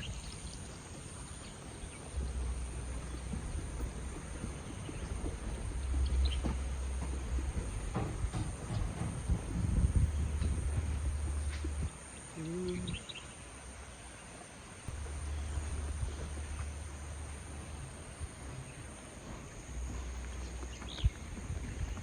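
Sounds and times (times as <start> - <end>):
wind rumbling on microphone: 0.0 - 14.2, 14.8 - 22.0
high insect drone: 0.0 - 22.0
brief low call: 12.3 - 13.1.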